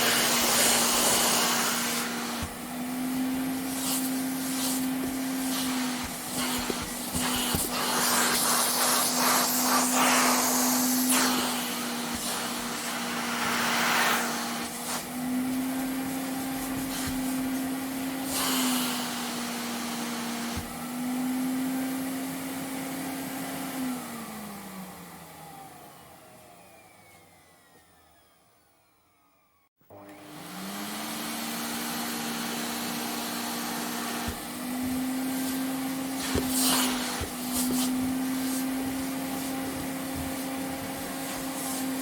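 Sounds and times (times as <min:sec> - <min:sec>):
vacuum cleaner running: 0:00.0 - 0:42.0
vacuum motor winding down: 0:23.8 - 0:42.0.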